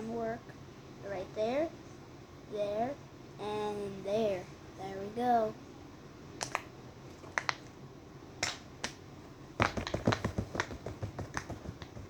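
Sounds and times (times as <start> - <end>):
fidget toy bubbles popping: 6.4 - 7.7, 9.6 - 12.0.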